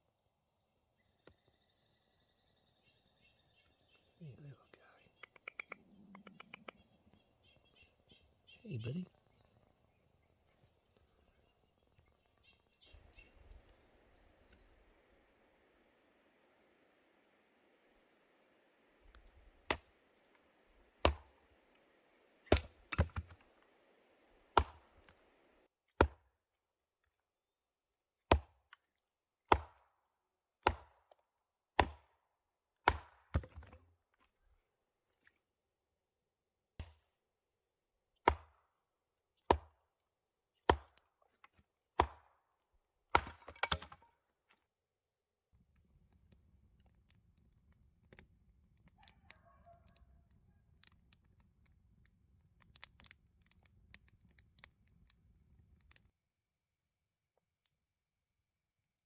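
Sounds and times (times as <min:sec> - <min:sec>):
sharp chopping strikes: 0:19.7 - 0:19.9, 0:21.0 - 0:21.4, 0:22.5 - 0:23.4, 0:24.5 - 0:24.9, 0:26.0 - 0:26.2, 0:28.3 - 0:28.6, 0:29.5 - 0:29.8, 0:30.6 - 0:31.0, 0:31.8 - 0:32.1, 0:32.9 - 0:33.7, 0:38.3 - 0:38.6, 0:40.7 - 0:41.0, 0:42.0 - 0:42.3, 0:43.1 - 0:43.8.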